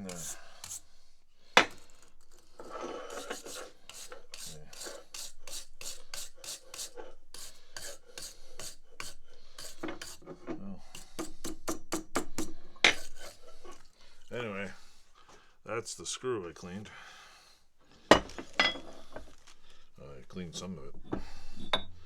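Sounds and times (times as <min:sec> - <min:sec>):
scraping on metal: 0:00.0 - 0:11.5, 0:12.3 - 0:14.4.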